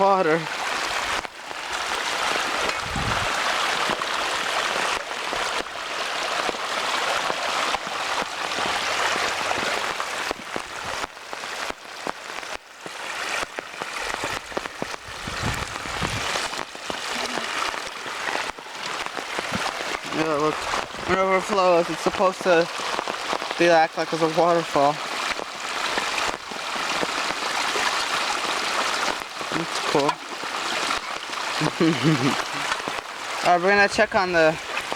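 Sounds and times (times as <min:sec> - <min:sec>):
fast-flowing water rushing: 0:00.0 - 0:34.9
low thuds: 0:02.7 - 0:03.4.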